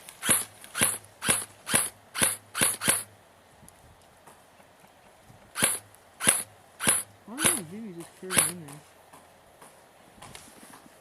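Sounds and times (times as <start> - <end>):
airsoft gun shots: 0.2 - 3.1, 5.6 - 7.7, 8.3 - 8.8.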